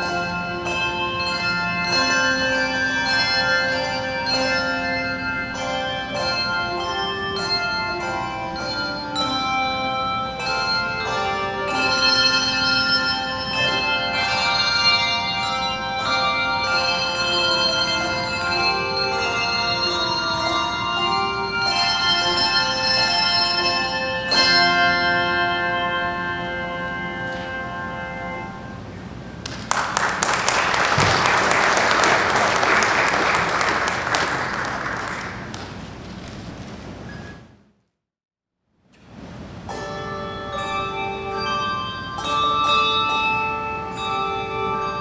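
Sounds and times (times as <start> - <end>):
handbell choir playing: 0.0 - 35.6, 39.7 - 45.0
congregation applauding: 29.4 - 37.0.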